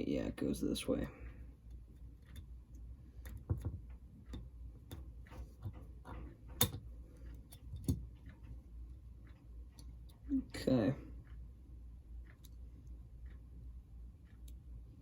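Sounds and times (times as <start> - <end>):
small parts clicking and tapping: 1.6 - 8.6.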